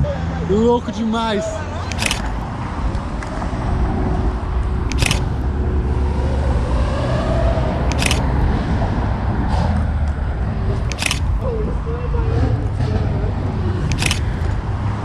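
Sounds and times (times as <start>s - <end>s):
car engine deep rumble: 0.0s - 15.0s
short sharp clicks: 1.9s - 2.4s, 4.9s - 5.4s, 7.8s - 8.4s, 10.8s - 11.4s, 13.8s - 14.6s.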